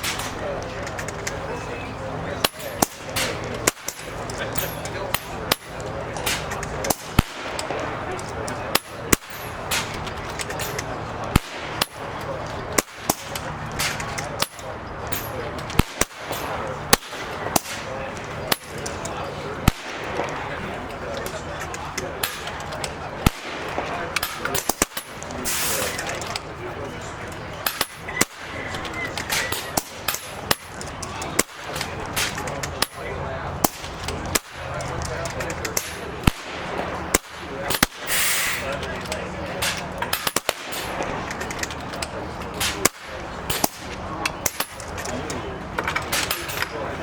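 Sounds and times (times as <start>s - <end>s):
air rifle cracks: 0.0s - 1.4s, 2.4s - 20.5s, 33.6s - 46.7s.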